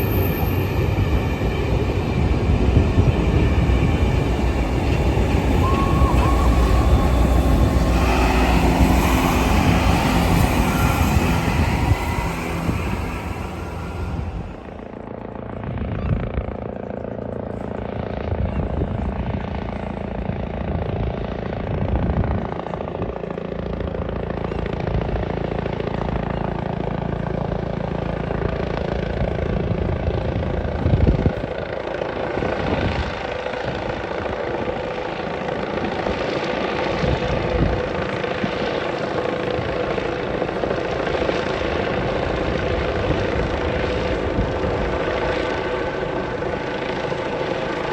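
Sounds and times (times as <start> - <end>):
rolling stock rumbling: 0.0 - 15.1
steam locomotive exhaust beats: 0.0 - 15.2.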